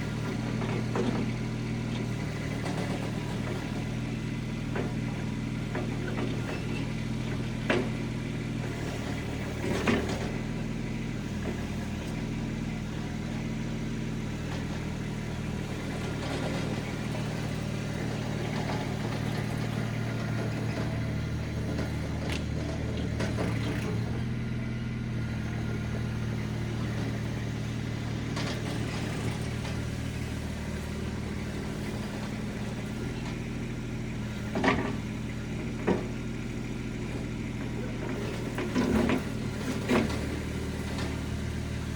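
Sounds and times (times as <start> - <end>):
skid steer engine running: 0.0 - 41.9.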